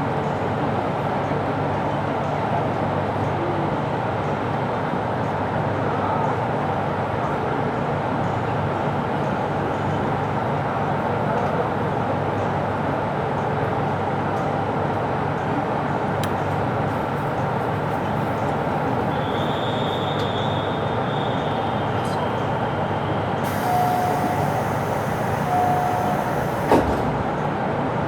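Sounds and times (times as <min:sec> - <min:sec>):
railcar engine drone: 0:15.3 - 0:28.0.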